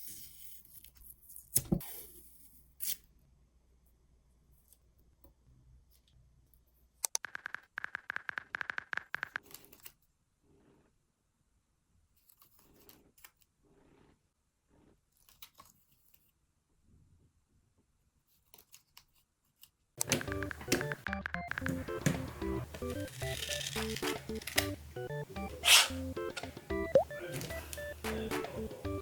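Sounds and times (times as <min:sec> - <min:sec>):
paper rustling and tapping: 0:20.0 - 0:28.8
stickers peeling from backing sheet: 0:20.0 - 0:28.9.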